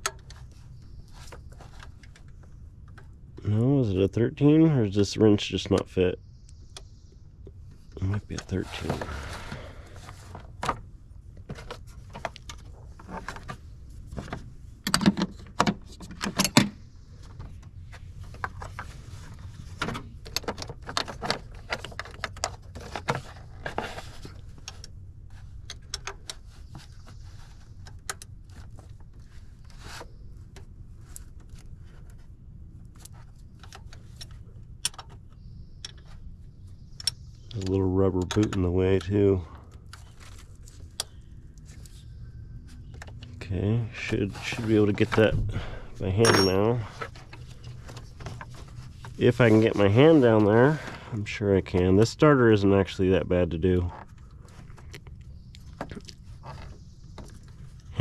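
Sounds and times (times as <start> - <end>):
metal hand tools clinking: 46.2 - 46.8.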